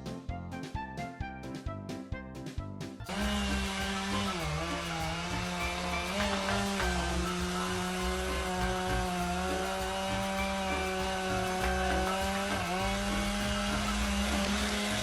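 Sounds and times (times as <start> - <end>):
small engine running: 3.1 - 15.0.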